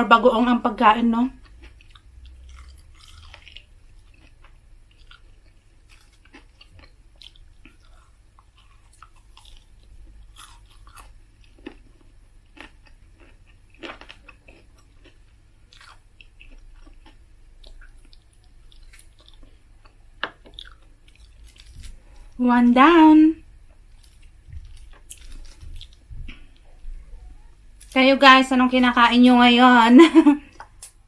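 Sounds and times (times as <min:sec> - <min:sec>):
person chewing food: 0:01.3 - 0:22.4, 0:23.4 - 0:27.9.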